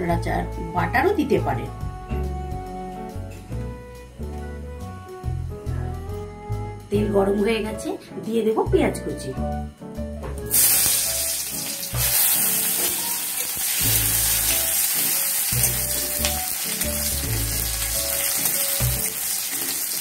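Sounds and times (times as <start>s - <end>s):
background music: 0.0s - 20.0s
onion sizzling in oil: 10.5s - 20.0s.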